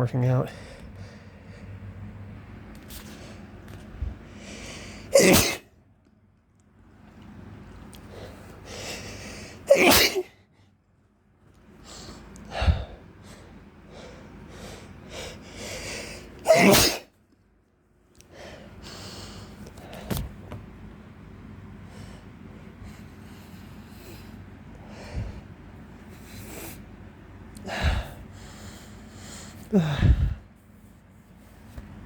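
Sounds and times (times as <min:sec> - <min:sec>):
man sneezing: 0:05.1 - 0:05.7, 0:09.7 - 0:10.4, 0:16.4 - 0:17.1.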